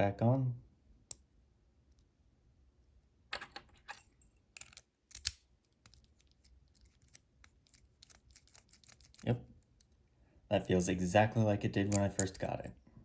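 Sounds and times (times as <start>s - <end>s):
padlock metal clicks and scrapes: 3.3s - 10.1s, 11.8s - 12.8s.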